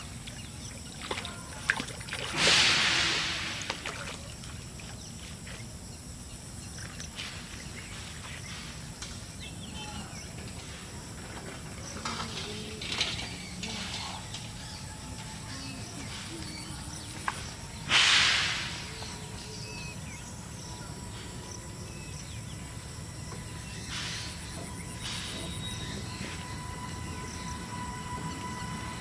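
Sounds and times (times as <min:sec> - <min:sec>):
loud splash in water: 0:01.0 - 0:04.5, 0:17.9 - 0:19.2.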